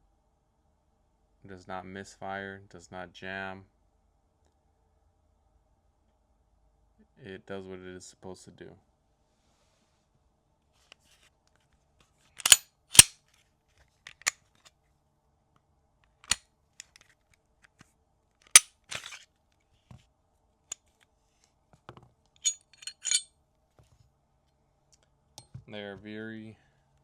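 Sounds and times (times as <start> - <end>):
pistol metallic clacks: 12.4 - 13.2, 18.5 - 19.2, 22.4 - 23.3.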